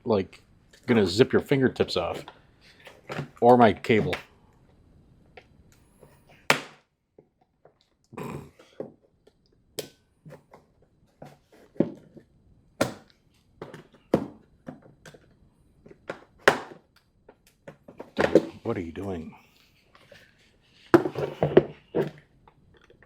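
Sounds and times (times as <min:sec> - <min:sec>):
knife scraping plastic: 0:20.0 - 0:22.3.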